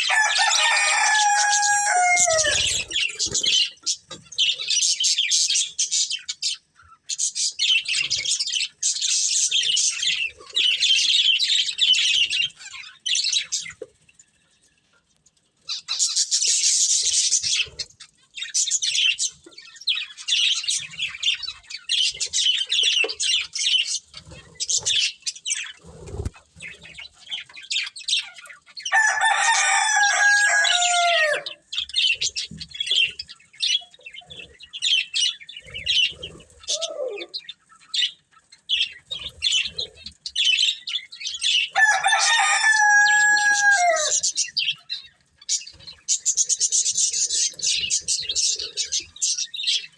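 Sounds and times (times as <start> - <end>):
budgerigars chirping and chattering: 0.0 - 49.9.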